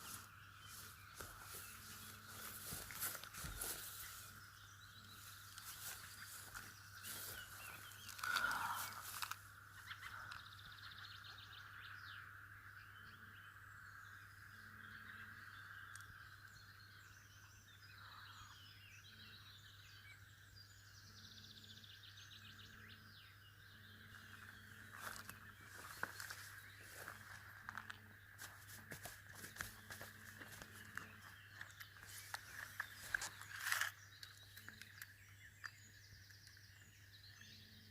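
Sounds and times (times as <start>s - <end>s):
faint songbird chirps: 0.0s - 37.9s.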